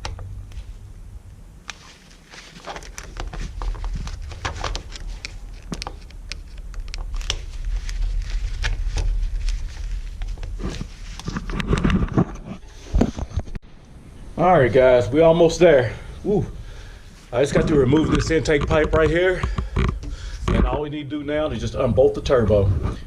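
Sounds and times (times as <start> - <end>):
low rumble: 6.6 - 12.7.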